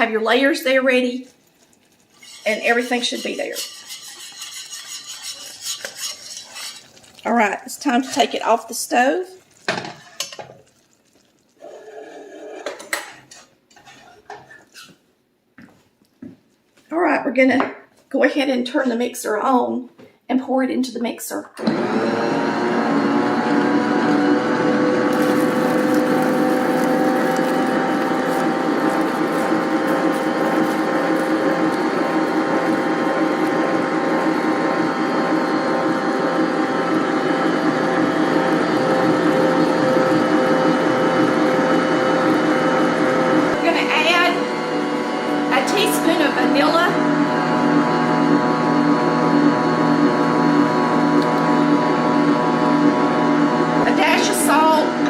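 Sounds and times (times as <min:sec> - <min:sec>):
rough scrape: 0:02.1 - 0:07.1, 0:11.6 - 0:15.0
stand mixer whirring: 0:21.6 - 0:55.0.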